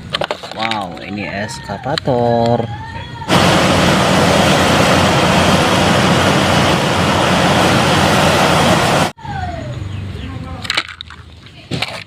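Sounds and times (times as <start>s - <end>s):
heavy machine engine rumble: 2.8s - 9.2s.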